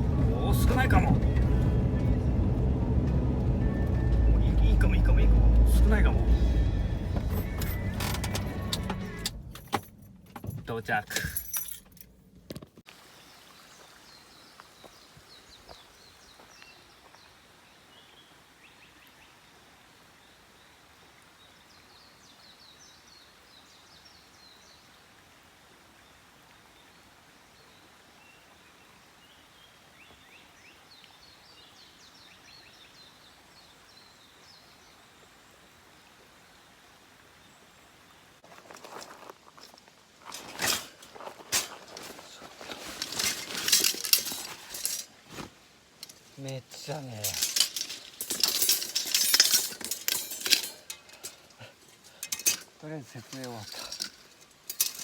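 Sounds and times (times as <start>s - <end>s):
open air hiss: 12.9s - 55.0s.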